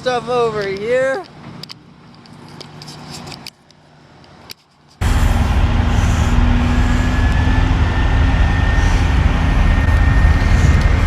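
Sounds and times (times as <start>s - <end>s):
heavy machinery engine rumbling: 5.0s - 11.0s.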